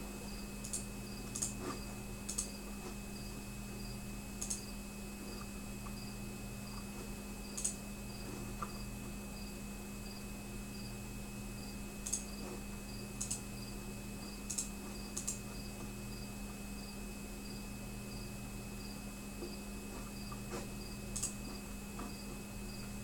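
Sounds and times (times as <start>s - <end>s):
electrical hum: 0.0s - 23.0s
computer keyboard clicks: 0.6s - 1.6s, 2.3s - 2.6s, 4.4s - 4.6s, 7.5s - 7.8s, 12.0s - 12.3s, 13.2s - 13.4s, 14.5s - 15.4s, 21.1s - 21.4s.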